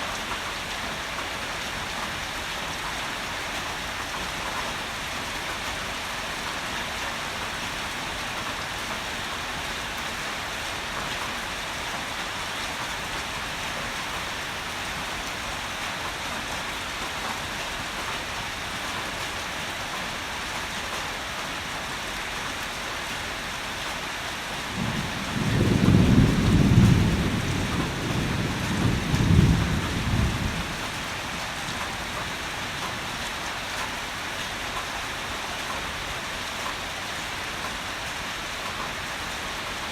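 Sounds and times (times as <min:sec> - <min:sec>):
heavy rain falling: 0:00.0 - 0:39.9
thunder rumbling: 0:24.7 - 0:32.9.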